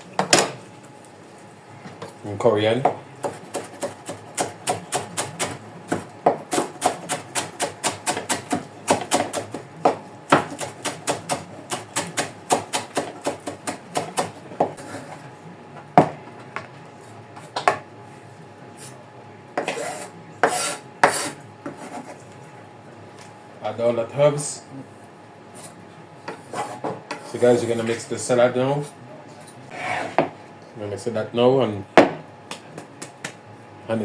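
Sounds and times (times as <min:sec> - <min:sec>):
knife chopping herbs on board: 0:02.8 - 0:14.8
knife scraping board: 0:14.2 - 0:15.3, 0:19.6 - 0:22.2, 0:25.6 - 0:28.0, 0:29.7 - 0:30.4.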